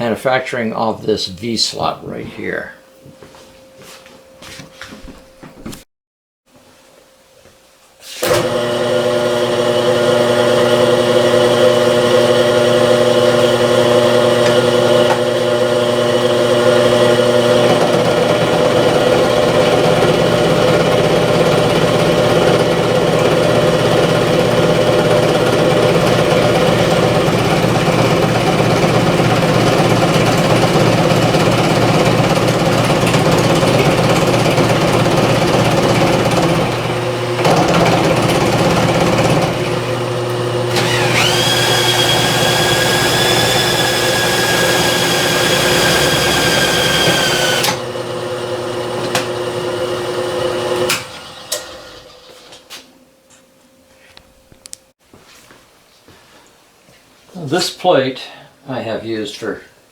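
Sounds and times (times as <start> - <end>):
machine tool cutting steel: 40.7 - 47.8.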